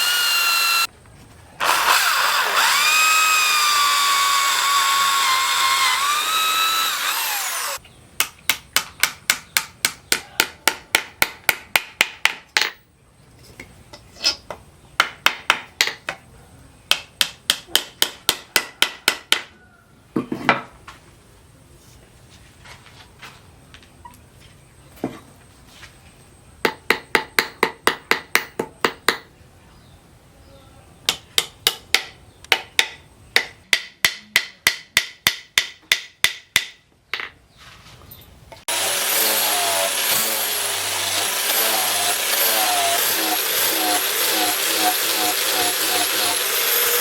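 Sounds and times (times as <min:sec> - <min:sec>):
power drill whining: 0:00.0 - 0:00.9, 0:01.6 - 0:07.8, 0:38.7 - 0:47.0
hammer tapping metal: 0:31.1 - 0:37.3.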